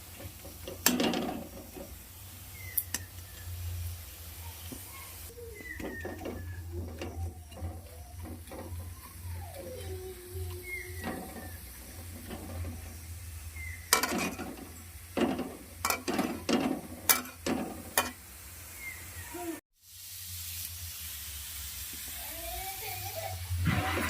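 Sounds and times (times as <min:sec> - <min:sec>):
spatula scraping pan: 0:00.0 - 0:02.0, 0:04.7 - 0:18.2, 0:23.6 - 0:24.0
onion sizzling in pan: 0:00.0 - 0:24.0.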